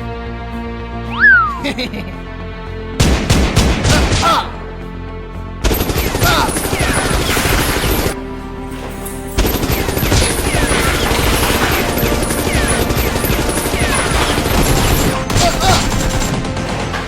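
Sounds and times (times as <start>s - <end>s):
background music: 0.0s - 17.0s
automatic gunfire: 5.7s - 8.2s, 9.5s - 16.9s.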